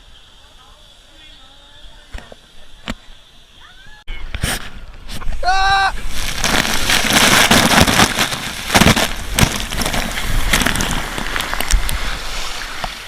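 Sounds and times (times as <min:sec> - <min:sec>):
rushing water spray and air: 0:04.1 - 0:13.0
water spattering hits: 0:06.0 - 0:13.0.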